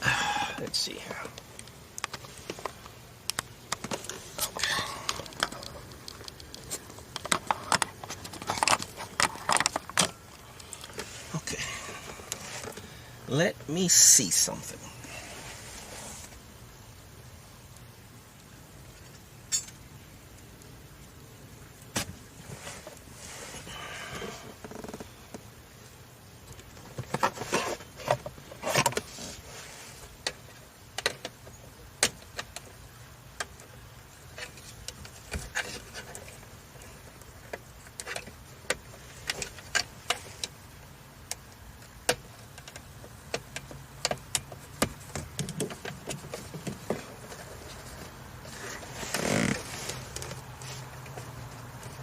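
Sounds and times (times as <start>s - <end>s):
rustling scrape: 10.9s - 11.4s, 12.0s - 12.8s, 15.1s - 16.4s, 22.4s - 23.7s, 27.2s - 30.1s, 46.3s - 52.0s.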